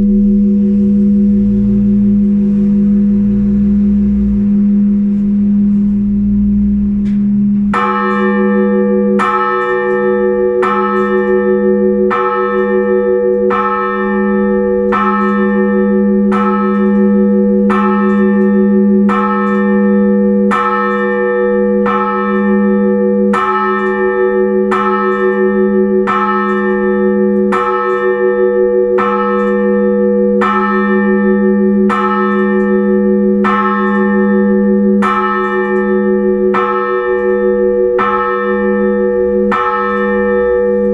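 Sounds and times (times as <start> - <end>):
steady deep hum: 0.0 - 8.0
church bell ringing: 0.0 - 40.9.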